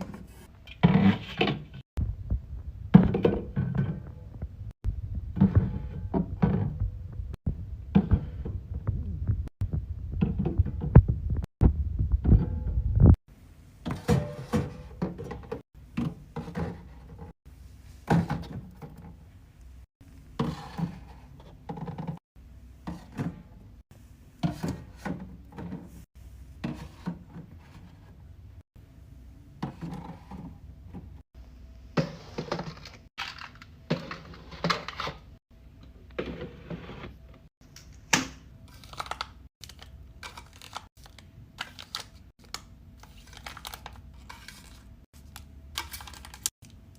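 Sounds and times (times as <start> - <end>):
drinks set onto fridge shelves: 13.8 - 17.3.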